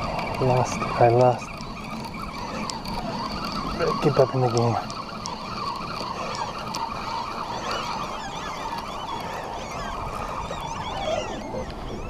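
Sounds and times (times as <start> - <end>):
birds chirping and calling: 0.0 - 12.0
steady background rush: 0.0 - 12.0.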